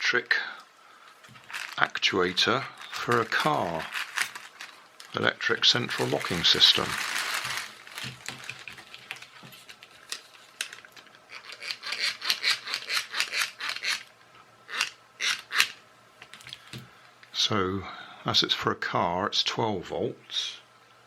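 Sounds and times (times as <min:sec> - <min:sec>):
rubbing and scraping packaging: 0:01.2 - 0:14.1.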